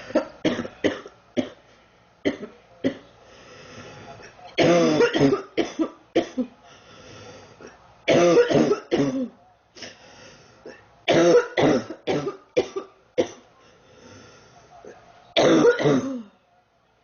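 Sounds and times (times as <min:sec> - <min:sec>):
girl coughing: 0:04.6 - 0:06.5, 0:08.1 - 0:09.3, 0:11.1 - 0:13.4, 0:15.4 - 0:16.3.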